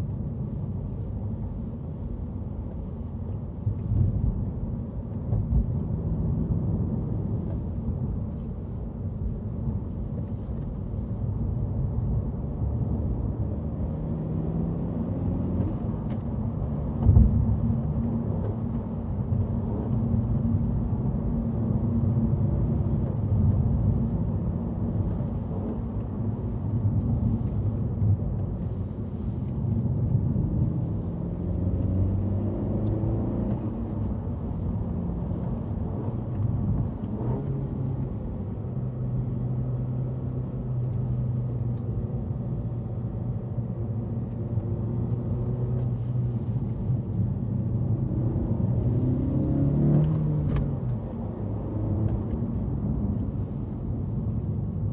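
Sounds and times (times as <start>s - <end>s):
car engine revving under load: 44.5s - 54.2s.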